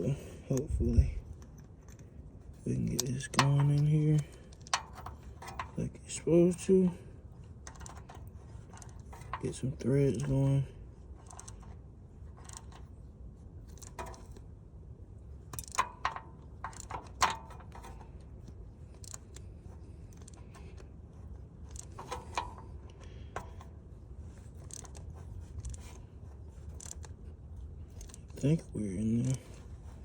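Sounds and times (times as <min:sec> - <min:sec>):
hand tools clicking and scraping metal: 0:00.0 - 0:12.9, 0:13.6 - 0:14.5, 0:15.5 - 0:27.2, 0:27.8 - 0:30.0.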